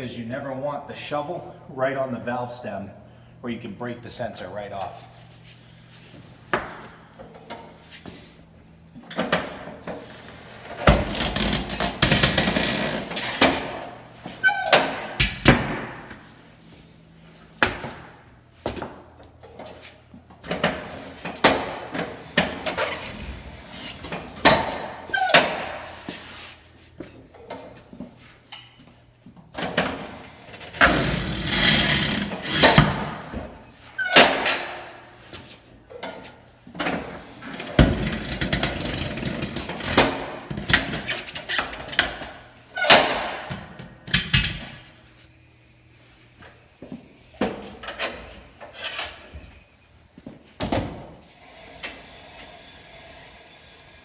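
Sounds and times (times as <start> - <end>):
tyre changer noise: 29.6 - 34.7, 44.2 - 50.0.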